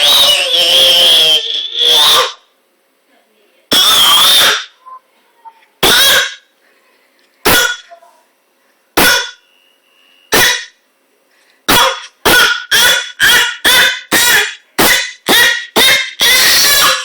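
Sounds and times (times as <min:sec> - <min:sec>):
baby shouting: 0:00.0 - 0:02.4, 0:11.8 - 0:17.0.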